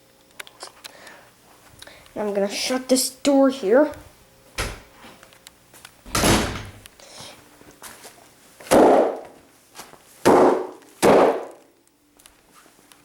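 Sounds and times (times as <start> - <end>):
bags popping with bangs: 8.7 - 9.4, 10.2 - 11.7.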